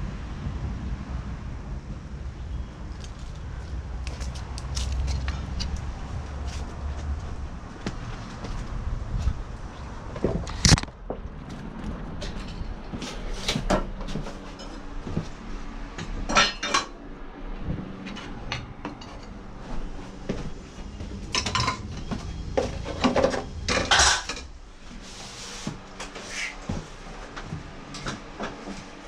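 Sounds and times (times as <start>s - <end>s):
metal tools clinking and clattering: 21.3s - 24.5s.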